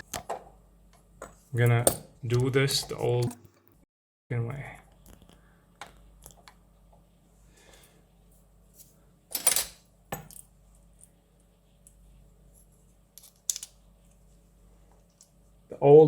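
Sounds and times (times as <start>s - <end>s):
metal lock parts clinking: 9.3s - 10.5s, 13.2s - 13.8s.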